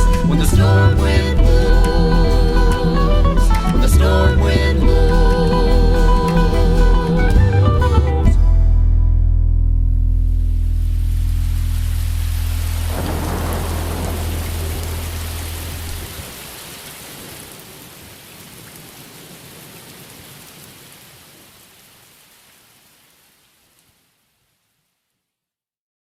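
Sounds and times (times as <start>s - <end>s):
steady rain: 0.0s - 4.2s, 10.3s - 25.1s
held low musical note: 0.0s - 16.1s.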